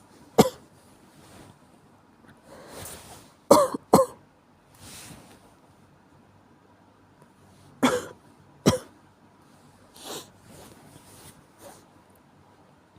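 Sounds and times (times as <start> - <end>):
person coughing: 0.4 - 0.6, 3.5 - 4.2, 7.8 - 8.9
soft breathy sound: 2.3 - 3.5, 4.7 - 5.6.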